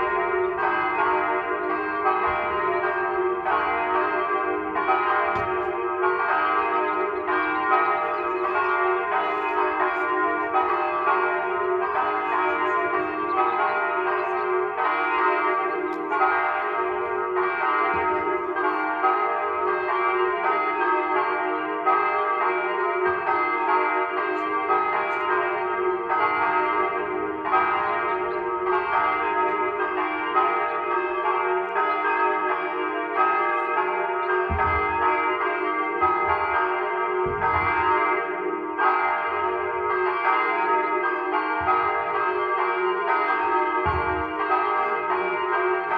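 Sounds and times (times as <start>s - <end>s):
church bells ringing: 0.0s - 45.9s.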